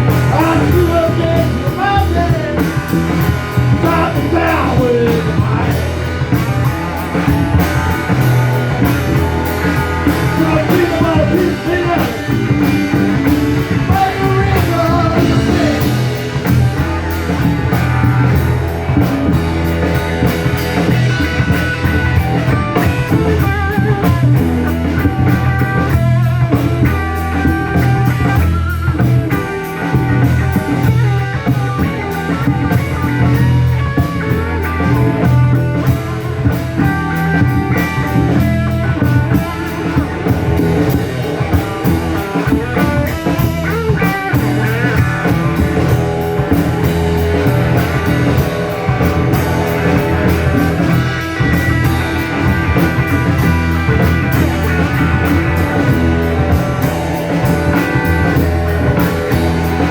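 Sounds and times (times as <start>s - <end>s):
rock band playing live: 0.0s - 59.9s.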